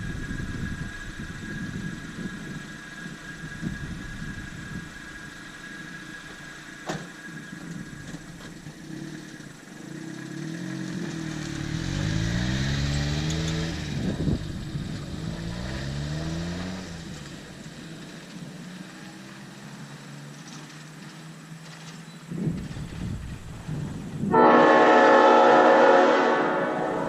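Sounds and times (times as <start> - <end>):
vehicle engine accelerating: 0.0 - 27.0.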